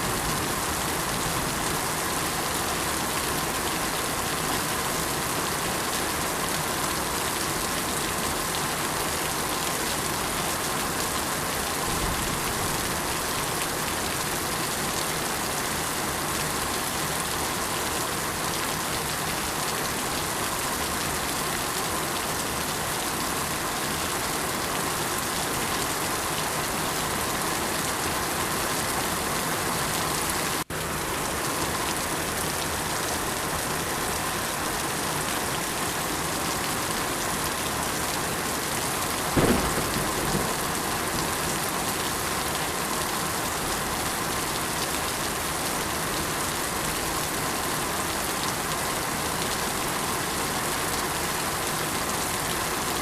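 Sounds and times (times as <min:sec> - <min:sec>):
steady rainfall: 0:00.0 - 0:53.0
low thump: 0:39.4 - 0:40.9.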